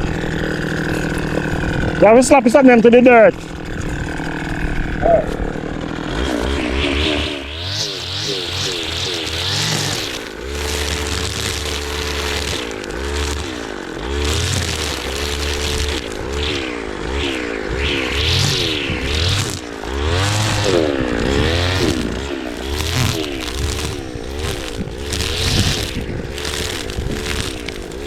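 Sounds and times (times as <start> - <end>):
machine engine pitch swinging: 5.0 - 13.4, 14.2 - 28.0.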